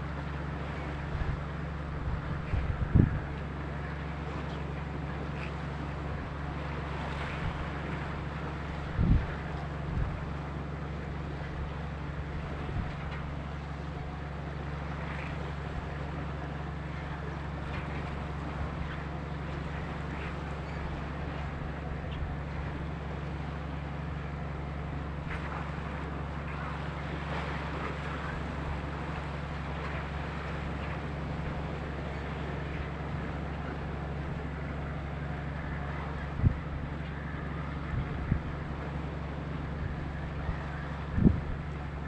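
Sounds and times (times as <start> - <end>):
boat engine drone: 0.0 - 42.0
wind noise on microphone: 1.0 - 3.4, 7.2 - 10.4, 12.1 - 13.2, 35.9 - 42.0.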